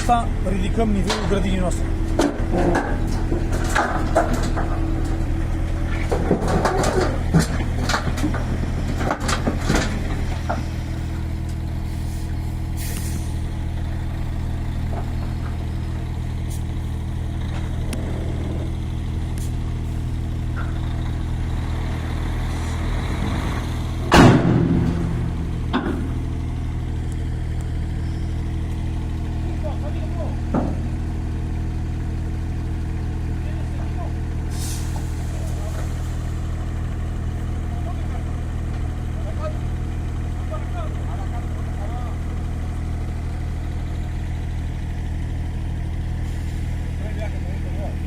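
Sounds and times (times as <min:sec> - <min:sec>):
diesel engine running: 0:00.0 - 0:48.0
knocks and scrapes: 0:05.9 - 0:10.7.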